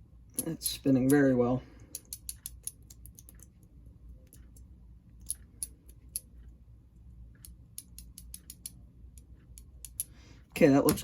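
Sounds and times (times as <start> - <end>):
small parts clicking: 0.3 - 3.6, 4.2 - 6.6, 7.3 - 10.2.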